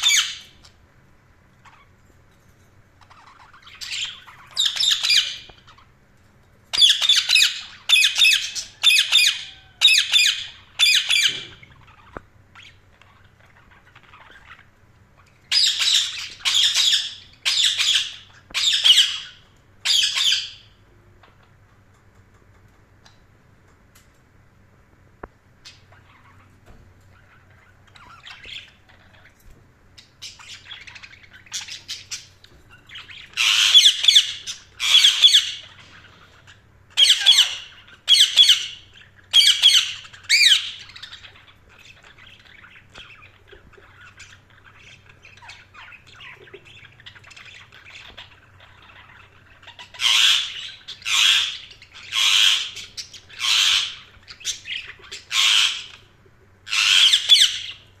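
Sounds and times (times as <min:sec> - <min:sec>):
budgerigars squawking: 0:00.0 - 0:00.6, 0:06.8 - 0:12.8, 0:15.5 - 0:20.6, 0:32.9 - 0:36.4, 0:37.0 - 0:56.1, 0:56.7 - 0:57.8
soft bird chattering: 0:01.6 - 0:06.0, 0:06.7 - 0:23.2, 0:25.6 - 0:58.0.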